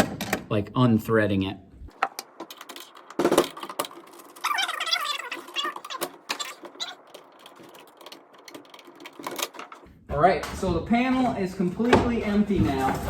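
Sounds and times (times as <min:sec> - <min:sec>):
wavering squeaky sound: 0:04.4 - 0:08.0.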